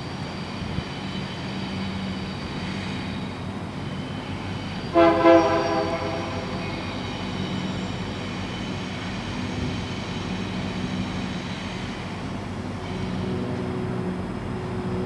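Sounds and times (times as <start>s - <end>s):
diesel locomotive engine rumble: 0.0s - 15.0s
rail noise: 0.0s - 15.0s
locomotive horn blast: 4.9s - 8.4s.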